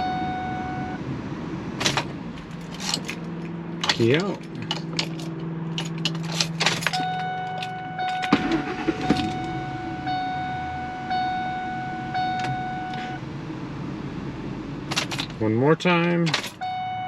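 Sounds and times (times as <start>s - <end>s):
dashboard warning chime: 0.0s - 1.0s, 6.8s - 13.2s, 16.5s - 17.0s
engine hum: 0.0s - 17.0s
keys jangling: 1.8s - 8.3s.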